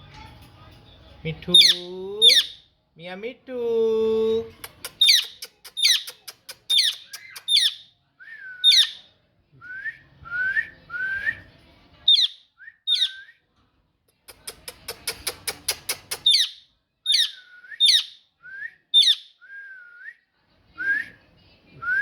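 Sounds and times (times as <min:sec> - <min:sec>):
parrot clicking: 0:04.6 - 0:07.8, 0:14.3 - 0:16.4
parrot whistling calls: 0:06.7 - 0:07.8, 0:08.6 - 0:09.0, 0:12.1 - 0:13.3, 0:16.2 - 0:18.2, 0:18.9 - 0:19.4.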